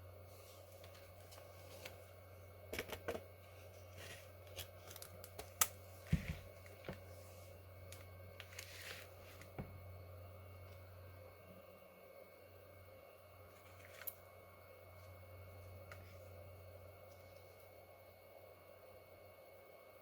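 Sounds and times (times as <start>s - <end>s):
steady low hum: 0.0s - 20.0s
clicks and knocks of laptop parts: 2.7s - 3.3s.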